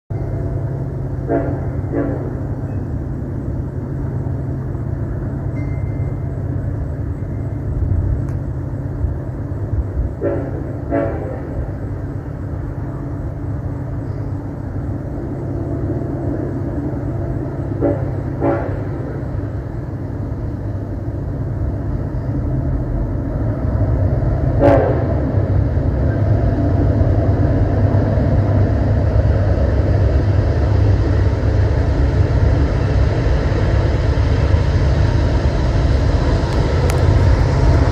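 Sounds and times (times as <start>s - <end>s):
train rumbling: 0.1s - 37.9s
locomotive air horn toots: 1.2s - 2.6s, 10.2s - 11.8s, 17.6s - 19.4s, 24.5s - 25.6s.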